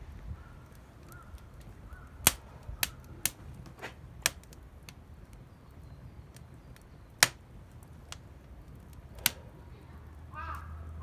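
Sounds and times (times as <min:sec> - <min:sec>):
burning wood popping: 0:00.0 - 0:11.0
wood fire crackling: 0:00.0 - 0:11.0.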